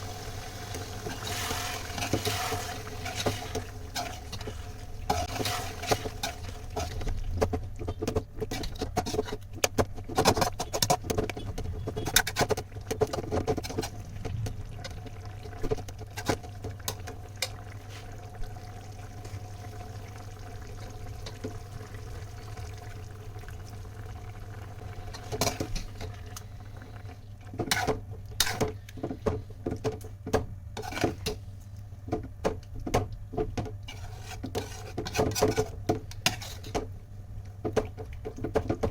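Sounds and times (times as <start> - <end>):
utensils tapping and scraping a pot: 0.7 - 14.0, 14.8 - 18.1, 25.1 - 26.2, 27.5 - 30.1, 30.8 - 31.4, 32.1 - 36.9.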